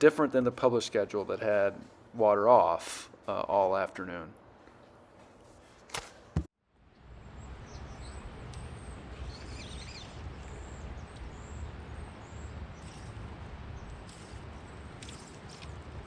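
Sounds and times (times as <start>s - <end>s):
small birds chirping: 7.6s - 15.9s.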